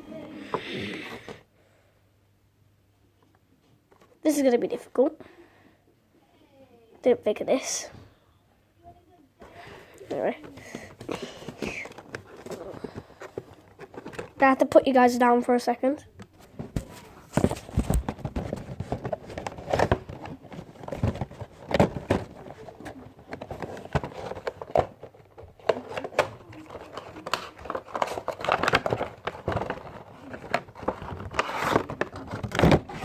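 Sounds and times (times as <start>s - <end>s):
plastic crinkling: 16.4s - 33.0s
cardboard box being opened: 25.6s - 33.0s.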